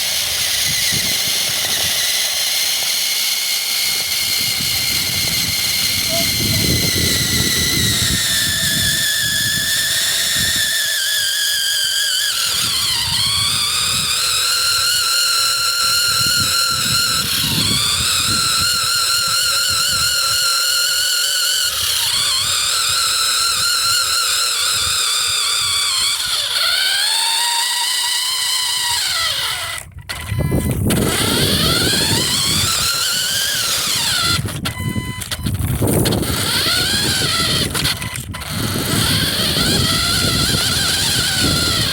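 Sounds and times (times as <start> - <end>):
wind gusting on microphone: 0.0 - 2.2, 3.8 - 10.9, 12.4 - 20.7, 28.4 - 41.9
electric toy car motor whining: 0.0 - 41.9.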